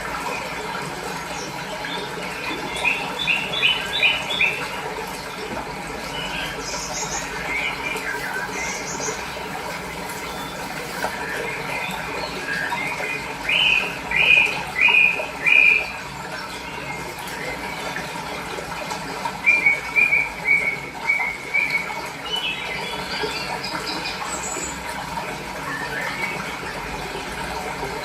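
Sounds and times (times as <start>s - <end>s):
flowing water: 0.0s - 28.0s
small birds chirping: 1.2s - 16.0s.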